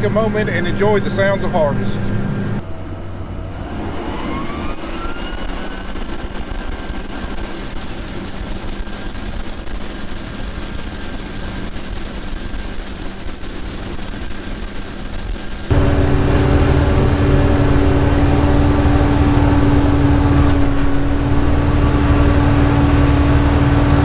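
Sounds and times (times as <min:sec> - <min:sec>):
cotton picker machine drone: 0:00.0 - 0:24.0
machine whine: 0:00.0 - 0:24.0
even hiss: 0:06.8 - 0:24.0.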